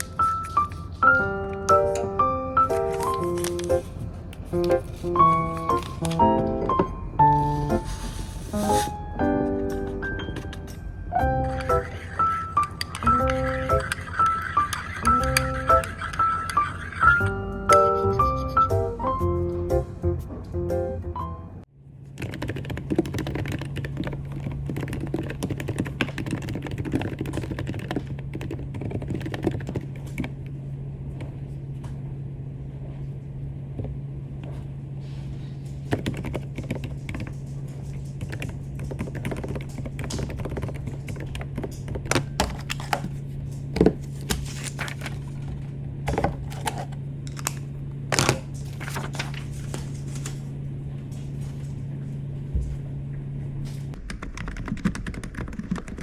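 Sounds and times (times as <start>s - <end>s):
steady low hum: 0.0s - 22.0s
typing on a keyboard: 22.2s - 30.3s, 35.9s - 37.4s, 38.1s - 41.9s, 54.0s - 56.0s.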